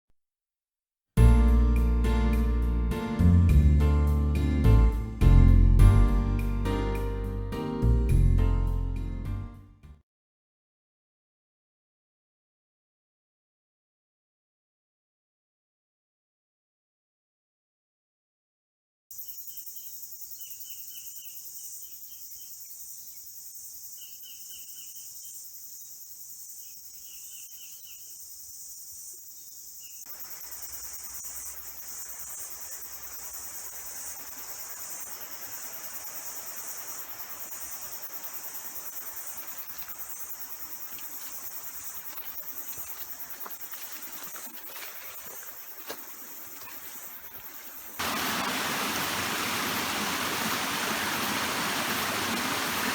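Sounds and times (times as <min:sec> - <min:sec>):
high-pitched insect chorus: 0:19.1 - 0:52.9
steady rushing noise: 0:48.0 - 0:52.9.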